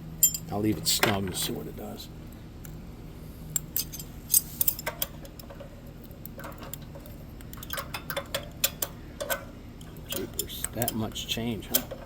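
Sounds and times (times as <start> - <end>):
hand tools clinking on metal nuts: 0.2 - 1.2, 3.6 - 12.0.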